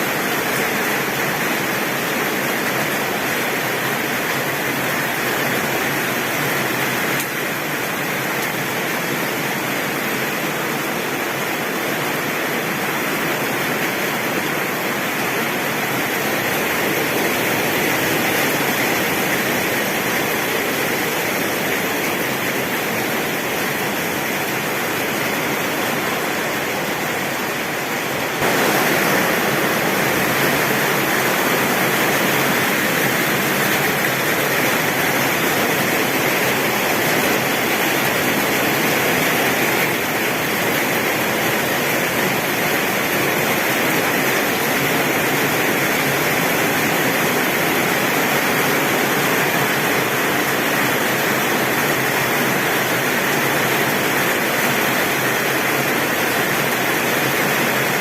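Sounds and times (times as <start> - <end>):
heavy rain on a tin roof: 0.0 - 58.0.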